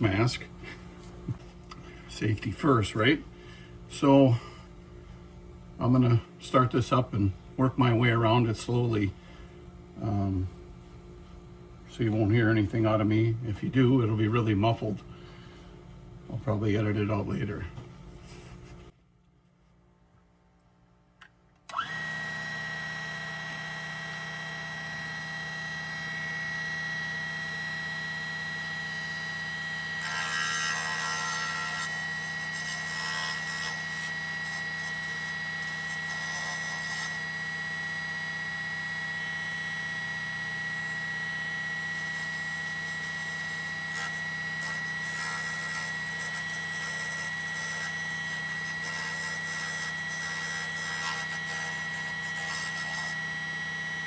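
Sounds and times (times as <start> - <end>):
table saw whining: 21.7 - 54.0
blade grinding glass: 30.0 - 37.4, 41.9 - 53.2.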